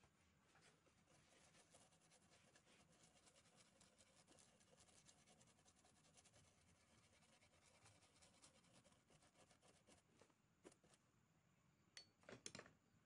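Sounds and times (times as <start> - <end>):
brush scrubbing circuit board: 0.6 - 11.0.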